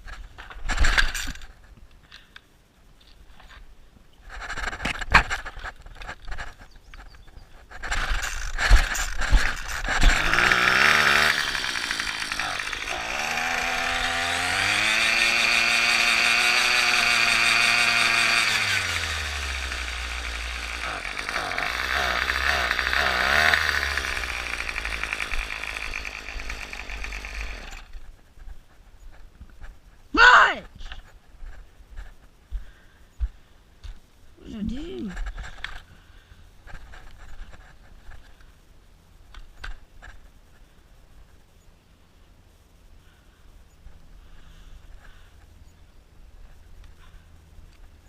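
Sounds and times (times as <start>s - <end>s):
string trimmer engine revving: 7.9s - 28.0s.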